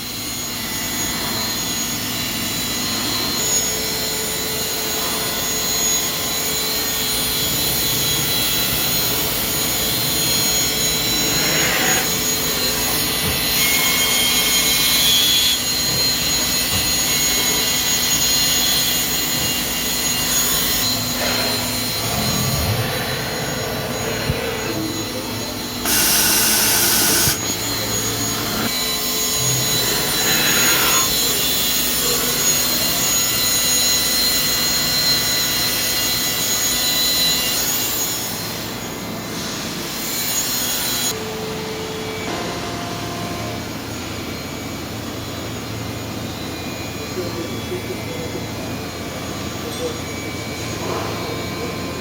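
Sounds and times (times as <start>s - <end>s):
loud hiss: 25.8s - 27.5s
grinding machine whine: 25.8s - 28.7s.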